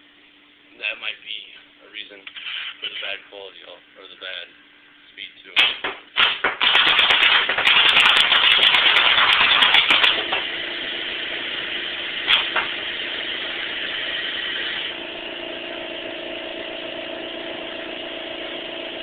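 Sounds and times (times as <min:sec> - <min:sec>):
air compressor motor humming: 0:00.8 - 0:19.0
short pop: 0:05.6 - 0:07.3
rapid paintball marker shots: 0:05.6 - 0:10.4.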